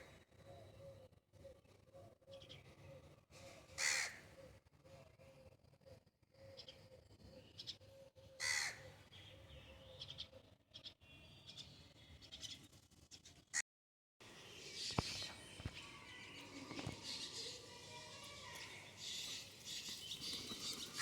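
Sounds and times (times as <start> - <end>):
faint high bird chirps: 14.3 - 21.0.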